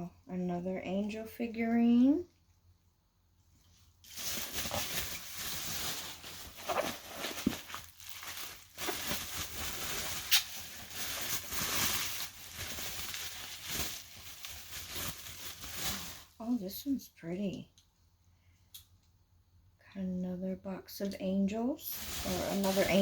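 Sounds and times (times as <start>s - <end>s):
packing material crinkling: 4.0s - 16.4s, 21.8s - 23.0s.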